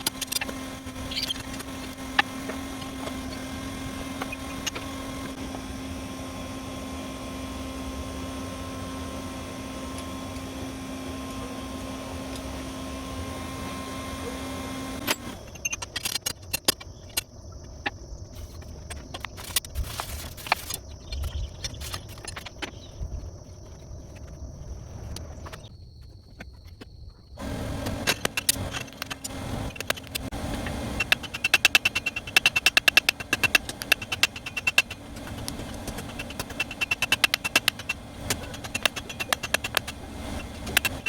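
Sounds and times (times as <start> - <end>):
low machine hum: 0.0 - 16.2, 27.2 - 41.0.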